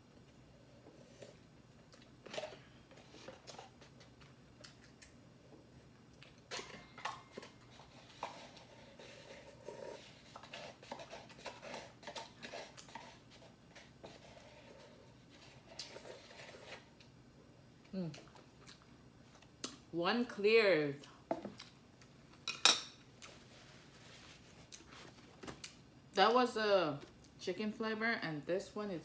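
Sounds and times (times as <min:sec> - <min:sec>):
person chewing noodles: 0:18.1 - 0:19.7.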